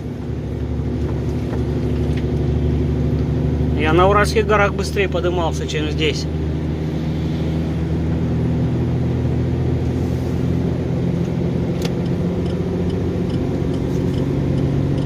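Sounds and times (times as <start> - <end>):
truck diesel engine under load: 0.0 - 15.0.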